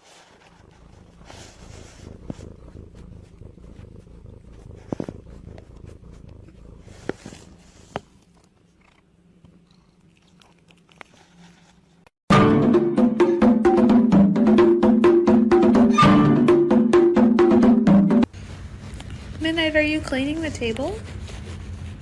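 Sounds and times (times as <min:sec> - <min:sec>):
cat purring: 0:00.0 - 0:12.1, 0:18.2 - 0:22.0
loud music: 0:12.3 - 0:18.2.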